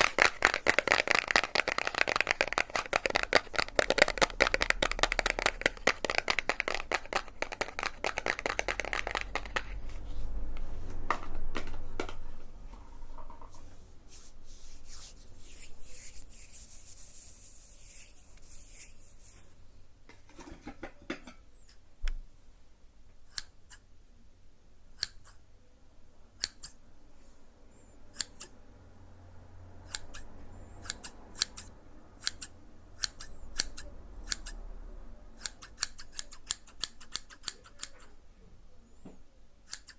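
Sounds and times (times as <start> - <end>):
scissors snipping clicks: 26.4 - 26.8, 28.2 - 28.6, 29.8 - 34.6, 35.4 - 38.1, 39.7 - 39.9.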